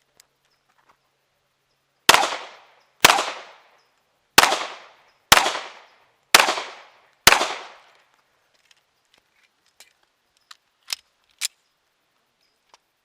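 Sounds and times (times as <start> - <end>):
pistol shots: 2.1 - 3.6, 4.4 - 7.9.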